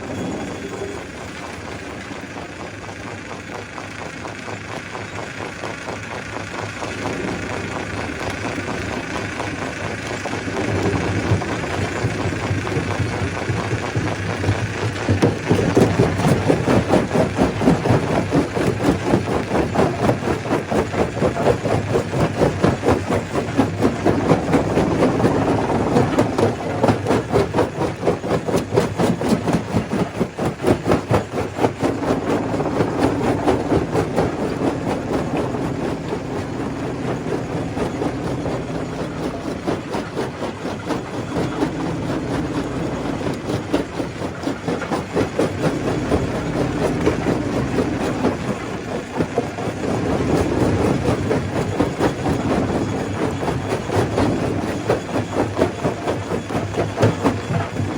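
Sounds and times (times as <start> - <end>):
stone crusher machine drone: 0.0 - 57.9
rock crushing clatter: 6.8 - 57.9.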